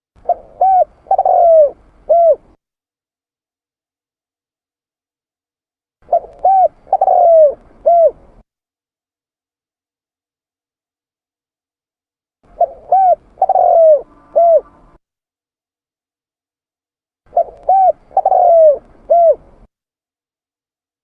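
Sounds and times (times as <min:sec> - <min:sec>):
dove cooing: 0:00.2 - 0:02.6, 0:06.1 - 0:08.4, 0:12.5 - 0:15.0, 0:17.3 - 0:19.7.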